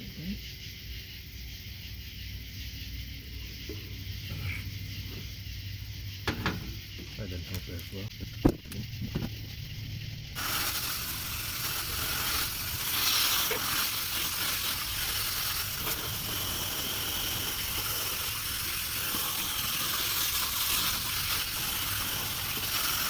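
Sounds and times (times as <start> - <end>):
water spraying from hose: 10.4 - 23.0.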